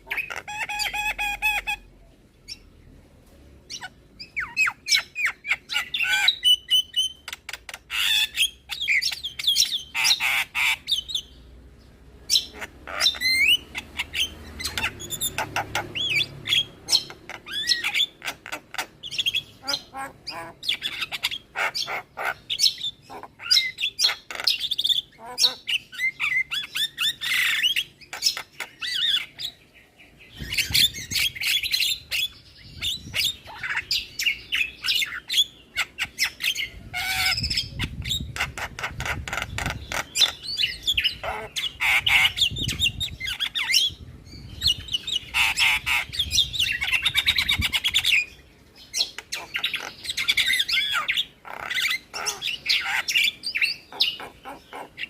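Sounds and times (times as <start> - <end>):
mynas calling: 0.0 - 2.0, 12.3 - 29.6, 30.4 - 44.0, 44.6 - 55.0.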